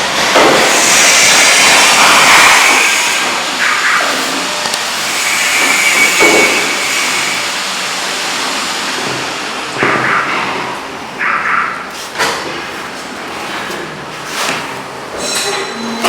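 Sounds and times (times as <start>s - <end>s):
machine rushing noise: 0.0s - 11.3s.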